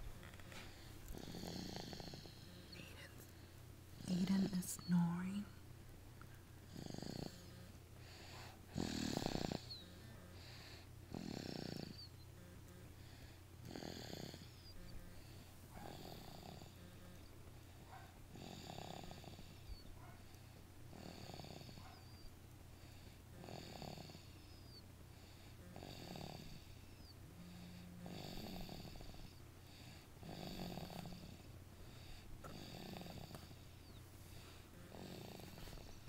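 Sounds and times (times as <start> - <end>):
person snoring faintly: 0.6 - 3.4, 4.0 - 5.3, 6.7 - 17.2, 25.2 - 36.0.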